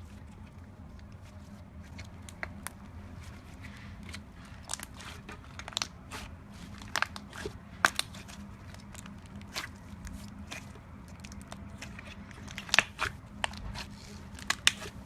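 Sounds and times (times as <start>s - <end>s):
slime crackling and popping: 4.6s - 15.0s.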